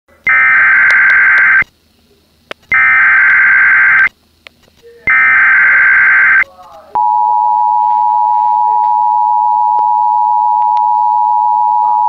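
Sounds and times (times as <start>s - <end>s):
buzzing digital data tones: 0.2s - 1.8s, 2.7s - 4.2s, 5.1s - 6.5s.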